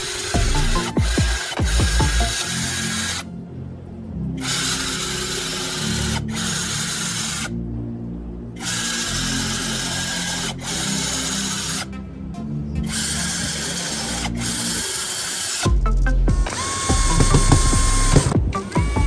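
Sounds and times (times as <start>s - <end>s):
power tool running: 0.0s - 3.3s, 4.4s - 7.5s, 8.6s - 11.9s, 12.8s - 15.7s, 16.4s - 19.0s
background music: 0.0s - 19.0s.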